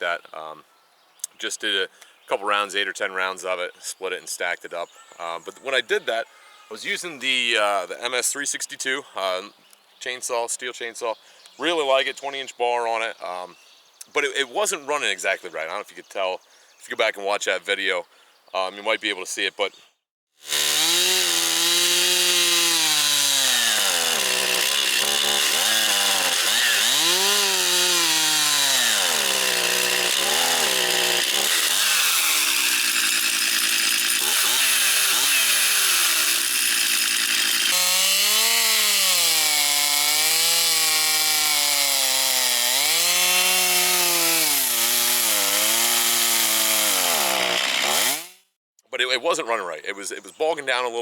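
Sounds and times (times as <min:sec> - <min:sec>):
chainsaw cutting wood: 0:20.4 - 0:48.6.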